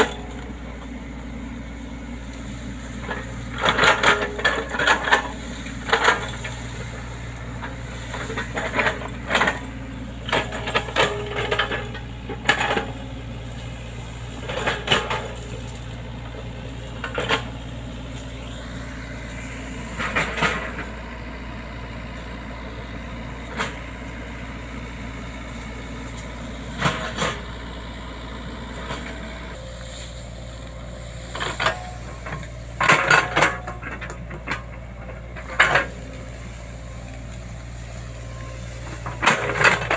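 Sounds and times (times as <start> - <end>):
metallic clanks of excavator bucket: 0.0 - 0.8, 2.8 - 17.8, 19.9 - 21.0, 26.0 - 27.7, 28.8 - 39.9
excavator diesel engine running: 0.0 - 39.9.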